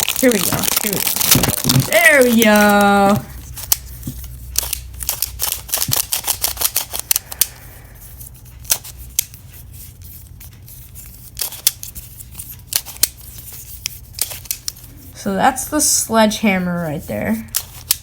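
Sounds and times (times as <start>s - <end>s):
plastic puzzle pieces clicking: 0.0s - 7.6s, 11.3s - 14.9s, 17.5s - 18.0s.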